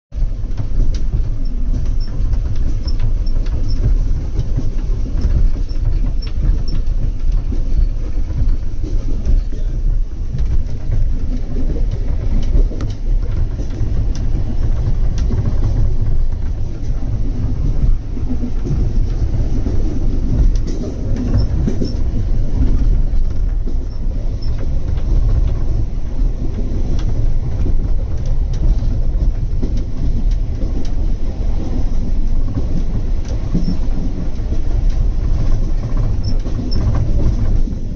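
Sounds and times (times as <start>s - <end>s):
vehicle interior rumble: 0.1s - 37.9s
faint clicks and rattles: 0.2s - 37.9s.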